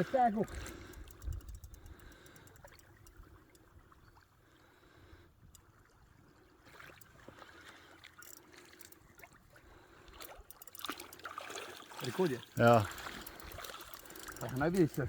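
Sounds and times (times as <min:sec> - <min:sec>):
water trickling and lapping: 0:00.0 - 0:15.0
light ticks: 0:00.4 - 0:03.7, 0:05.4 - 0:05.7, 0:10.2 - 0:11.2, 0:12.6 - 0:15.0.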